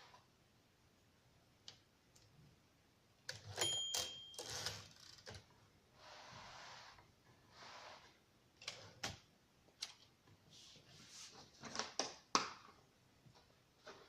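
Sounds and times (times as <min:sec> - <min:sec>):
typewriter bell ring: 0:03.4 - 0:04.9.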